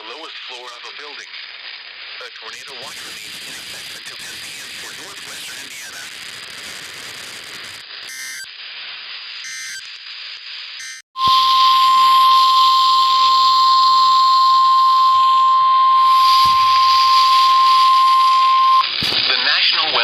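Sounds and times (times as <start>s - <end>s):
radio static: 0.0s - 1.4s, 2.1s - 8.6s, 9.4s - 10.1s, 14.6s - 20.0s
warbling digital data bursts: 2.5s - 8.6s, 9.4s - 10.0s, 10.7s - 20.0s
steady warning alarm tone: 8.1s - 8.5s, 9.4s - 9.9s, 10.8s - 18.9s.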